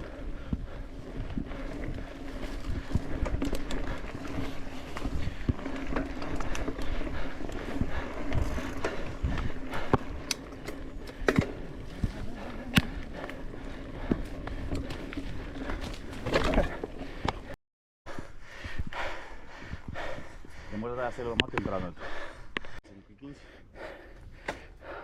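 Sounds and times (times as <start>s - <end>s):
bike rattling clicks and knocks: 0.0s - 17.6s
bike tyres humming on dirt: 0.0s - 22.4s.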